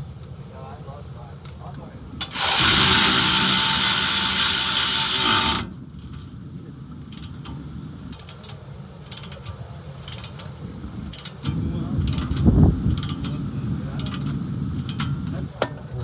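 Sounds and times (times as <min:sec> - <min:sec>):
power ratchet whirring: 0:02.2 - 0:05.8
hand ratchet clicking: 0:02.2 - 0:06.3, 0:07.1 - 0:13.4, 0:14.0 - 0:15.2.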